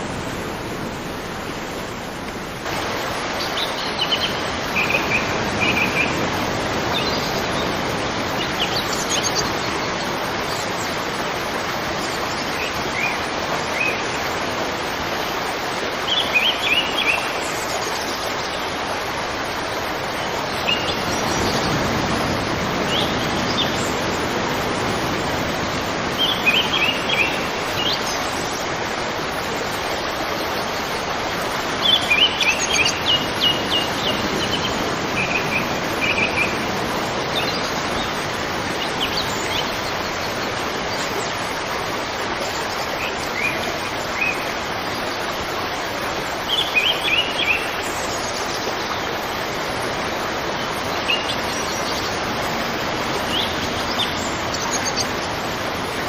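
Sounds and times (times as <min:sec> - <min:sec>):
birds chirping: 0:00.0 - 0:11.1, 0:30.9 - 0:41.7, 0:46.4 - 0:56.0
river water rushing: 0:00.0 - 0:56.0.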